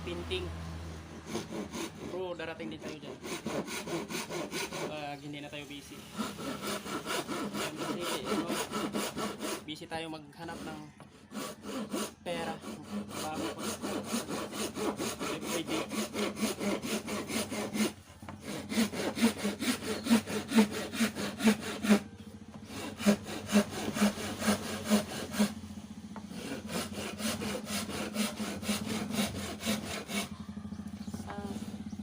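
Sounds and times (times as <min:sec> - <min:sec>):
hand saw cutting hardwood: 0:00.0 - 0:30.6, 0:31.2 - 0:31.9.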